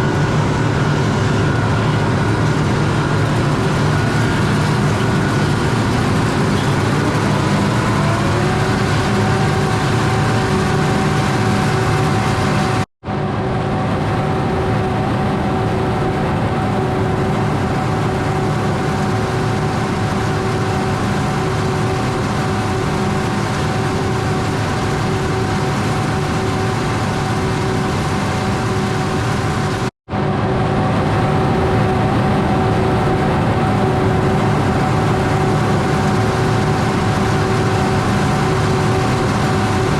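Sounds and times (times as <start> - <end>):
diesel machinery running: 0.0 - 39.9
machine whine: 0.0 - 39.9.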